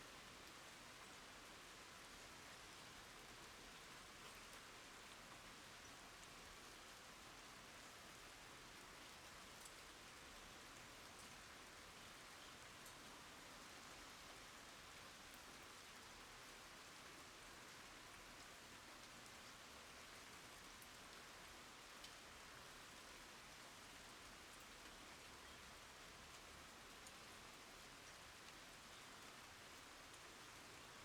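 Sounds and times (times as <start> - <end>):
rain on wooden boards: 0.1 - 31.0.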